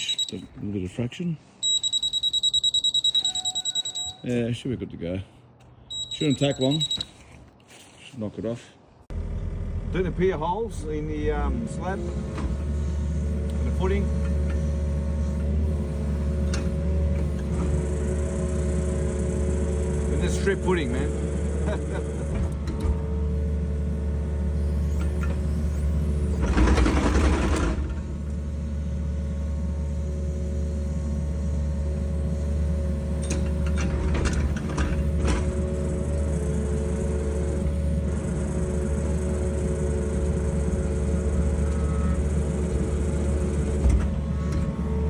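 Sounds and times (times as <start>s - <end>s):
excavator diesel engine running: 9.1s - 45.0s
hydraulic auger drilling: 9.1s - 45.0s.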